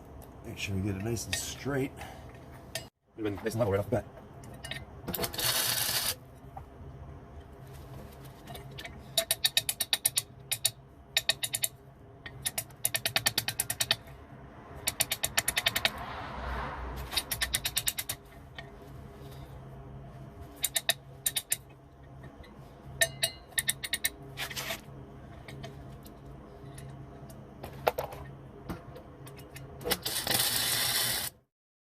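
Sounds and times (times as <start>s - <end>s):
ratchet tool clicking: 14.8s - 16.0s, 17.0s - 18.2s, 29.9s - 31.4s.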